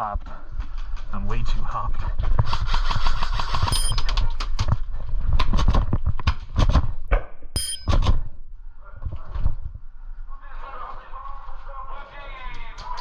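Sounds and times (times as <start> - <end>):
metallic pings: 3.7 - 4.0, 7.6 - 8.0.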